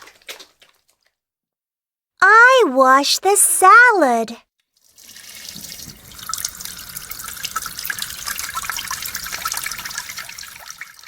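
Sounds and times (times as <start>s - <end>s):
water splashing and dripping: 0.0s - 1.2s, 4.8s - 11.0s
tap water running into sink: 4.8s - 11.0s.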